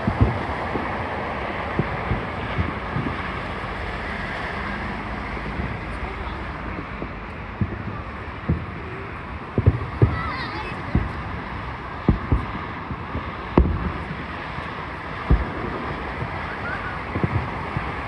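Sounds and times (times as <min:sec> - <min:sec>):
crowd murmur: 0:00.0 - 0:18.0
distant fireworks thumps: 0:00.0 - 0:18.0
wind on microphone: 0:00.0 - 0:18.0.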